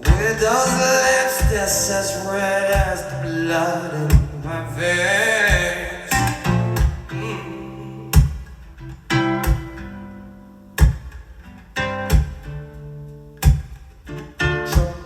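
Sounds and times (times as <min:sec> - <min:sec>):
guitar strums: 0:00.0 - 0:15.0
low held bass notes: 0:04.1 - 0:08.3.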